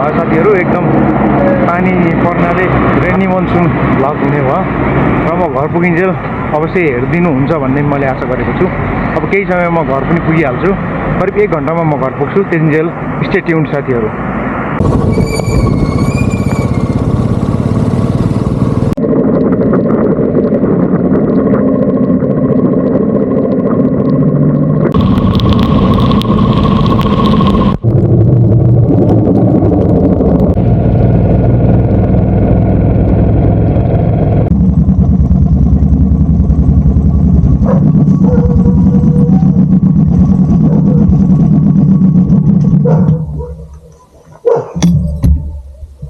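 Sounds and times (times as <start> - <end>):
wind and road noise: 0.0 - 46.0
motorcycle engine running: 14.8 - 19.0, 24.9 - 46.0.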